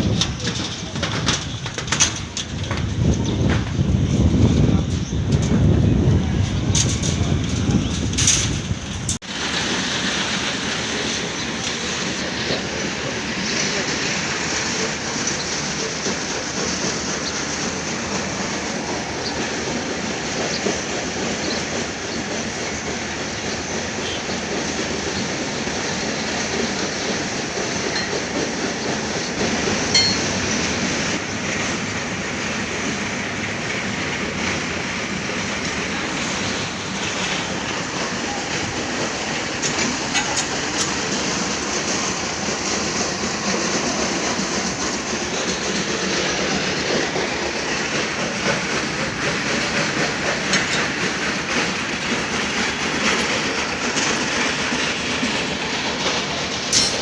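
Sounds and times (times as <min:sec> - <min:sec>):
sharp clicks and knocks: 0:00.0 - 0:04.0, 0:36.4 - 0:42.9, 0:43.5 - 0:57.0
machinery rattling clatter: 0:00.0 - 0:57.0.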